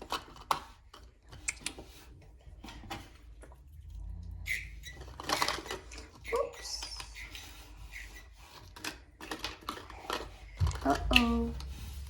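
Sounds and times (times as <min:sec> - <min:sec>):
plastic toy pieces clicking: 0:04.8 - 0:11.6.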